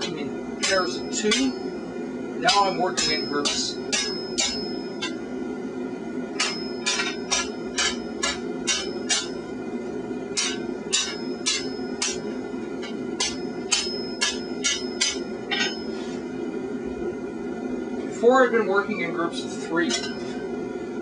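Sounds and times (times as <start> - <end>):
hammer striking steel on anvil: 0.0 - 1.8, 2.4 - 5.2, 6.4 - 9.5, 10.3 - 16.0, 19.9 - 20.3.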